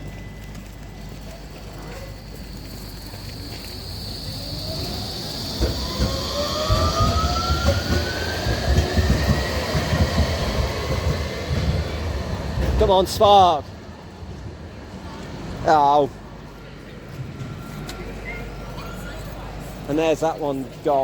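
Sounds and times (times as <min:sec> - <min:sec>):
tram motor whine: 0:00.0 - 0:19.8
wheels rumbling on rails: 0:00.0 - 0:21.0
high-pitched squeal: 0:01.7 - 0:13.6.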